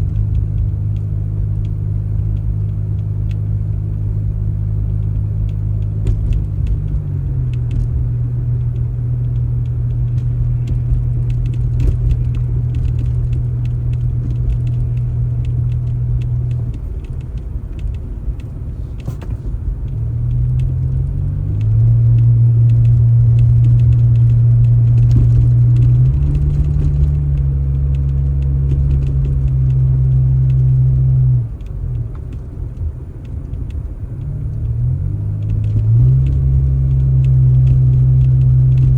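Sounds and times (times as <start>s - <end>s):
engine revving: 34.2s - 38.9s.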